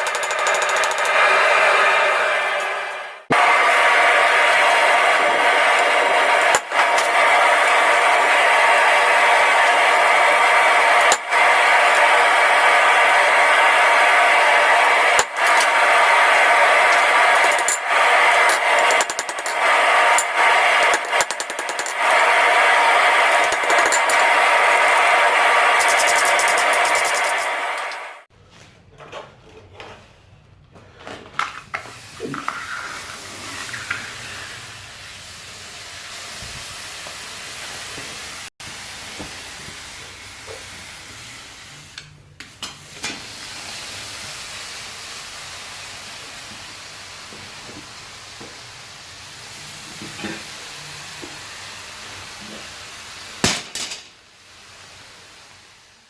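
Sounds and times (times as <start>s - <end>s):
steady hissing: 0.0s - 28.3s.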